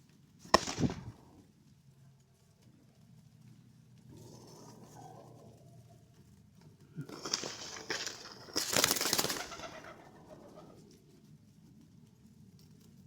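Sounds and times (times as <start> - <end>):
pigeon wings flapping: 0.4 - 1.4, 7.0 - 11.9.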